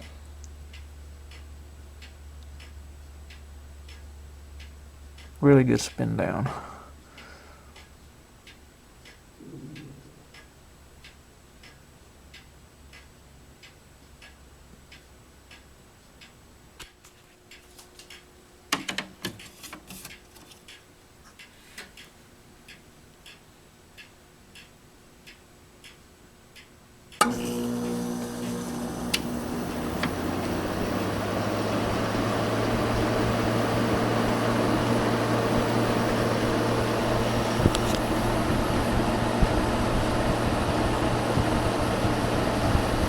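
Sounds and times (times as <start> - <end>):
air conditioner fan hum: 0.0 - 43.0
clock-like ticking: 0.7 - 5.4, 7.2 - 18.3, 21.4 - 26.7
loud steady machine hum: 27.2 - 43.0.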